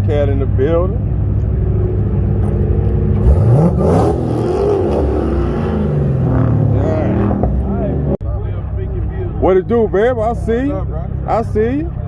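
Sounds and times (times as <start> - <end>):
car engine rumbling: 0.0 - 12.0
engine revving: 1.7 - 8.2.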